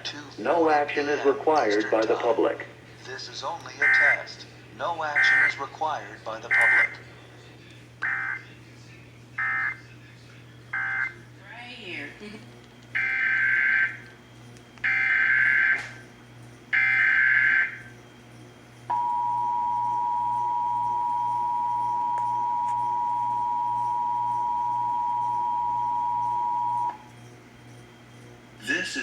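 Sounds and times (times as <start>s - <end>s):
buzzy digital data bursts: 16.7s - 18.2s
steady two-tone alert beep: 18.9s - 27.0s.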